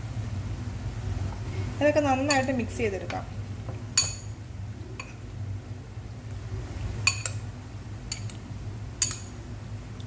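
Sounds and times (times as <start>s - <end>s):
spoon clinking against a bowl: 2.3s - 2.6s, 4.0s - 4.3s, 7.0s - 7.4s, 8.1s - 8.4s, 9.0s - 9.3s.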